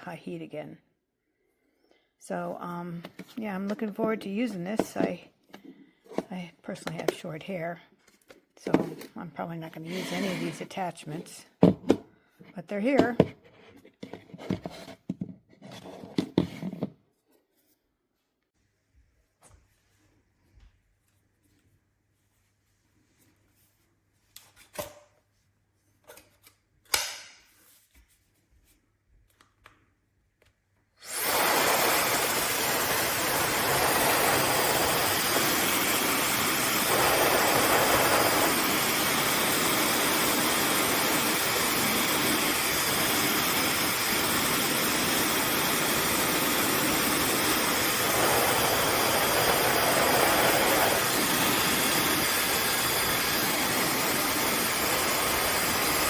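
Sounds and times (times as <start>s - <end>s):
hair dryer blowing with whine: 31.0s - 56.0s.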